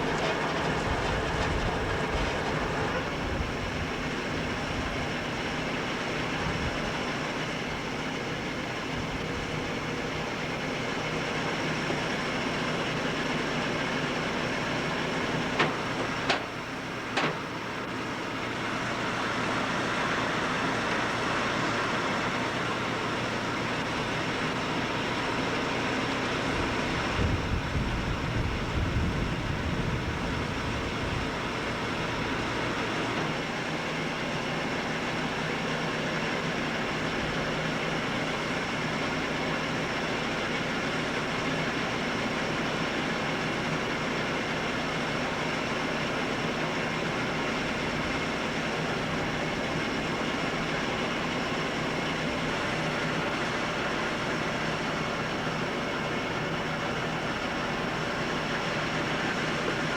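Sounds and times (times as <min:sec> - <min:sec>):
heavy machinery droning: 0:00.0 - 0:59.9.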